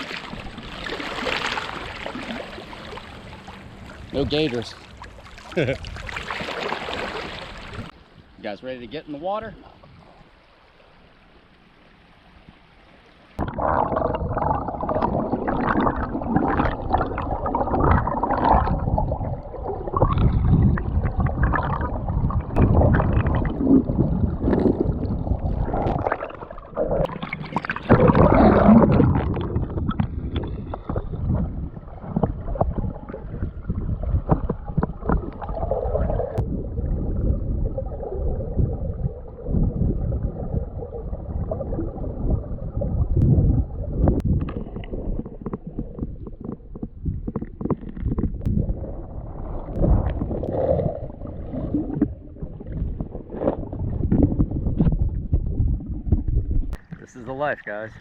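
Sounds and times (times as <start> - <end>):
river water gurgling: 0.0 - 8.0.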